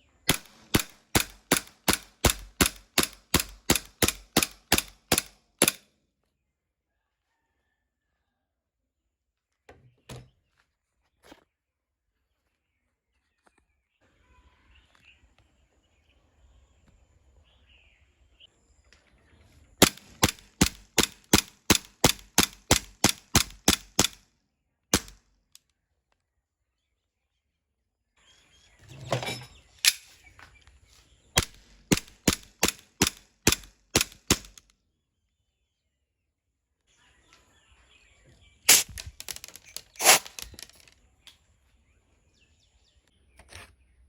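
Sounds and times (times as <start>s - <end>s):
airsoft gun shots: 0.3s - 5.8s, 19.8s - 24.2s, 24.9s - 25.2s, 31.4s - 34.6s, 38.7s - 40.6s.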